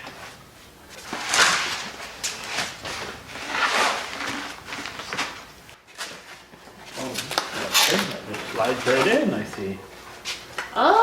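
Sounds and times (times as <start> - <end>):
packaging rustling and scraping: 0.9 - 9.5.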